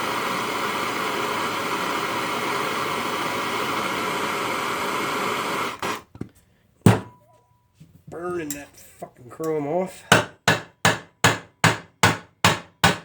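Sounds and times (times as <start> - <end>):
gas torch flame hissing: 0.0 - 6.1.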